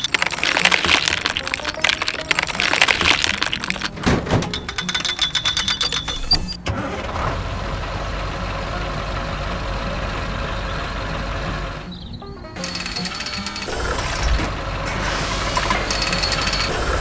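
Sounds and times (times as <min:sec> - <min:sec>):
rapid even clicking: 0:00.0 - 0:06.6, 0:12.6 - 0:17.0
engine running: 0:06.4 - 0:17.0.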